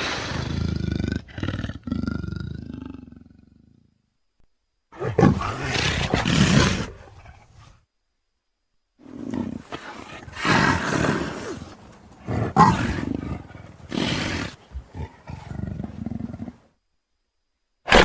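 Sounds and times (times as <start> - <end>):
big cat growling: 0.0 - 3.8, 4.9 - 7.7, 9.0 - 16.7.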